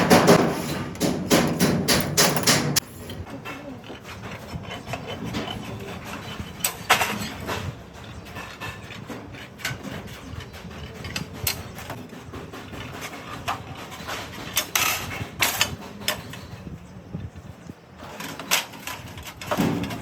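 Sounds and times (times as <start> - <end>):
sharp tool strikes: 0.0 - 3.2
hand tools tapping and scraping: 0.0 - 20.0.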